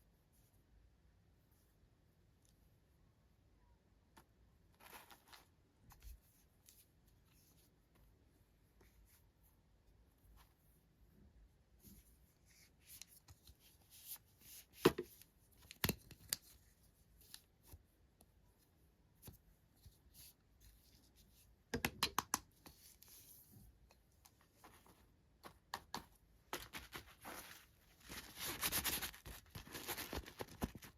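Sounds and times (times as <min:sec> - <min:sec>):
toy packaging handled and opened: 0:04.7 - 0:06.1, 0:24.6 - 0:30.9.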